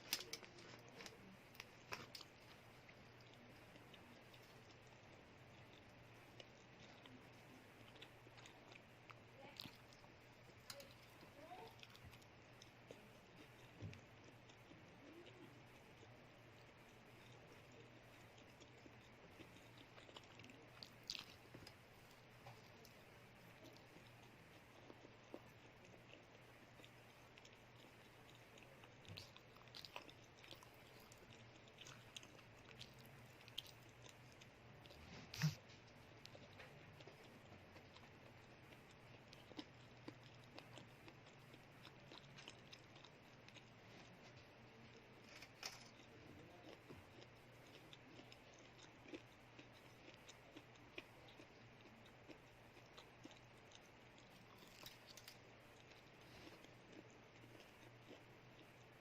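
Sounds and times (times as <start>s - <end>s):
chewing cheese stick: 0.0s - 59.0s
low steady hum: 0.0s - 59.0s.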